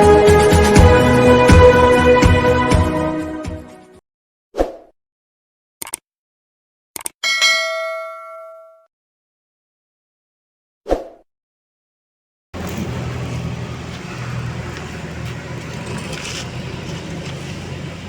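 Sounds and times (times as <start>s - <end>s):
low motor hum: 12.6s - 18.0s
road traffic noise: 12.6s - 18.0s.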